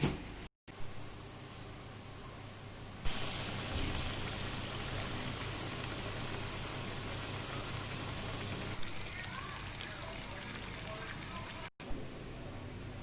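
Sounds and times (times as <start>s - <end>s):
food sizzling in hot oil: 3.0s - 11.7s.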